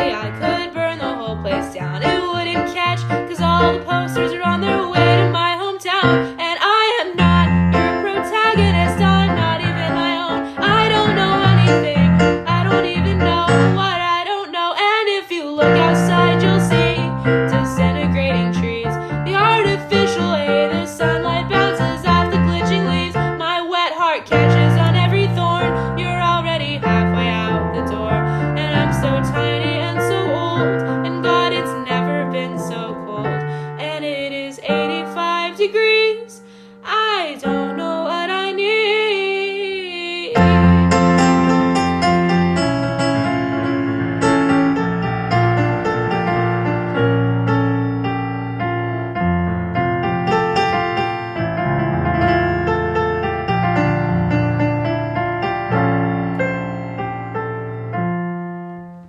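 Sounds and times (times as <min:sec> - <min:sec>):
person singing: 0:00.0 - 0:41.2
piano accompaniment: 0:00.0 - 0:59.0.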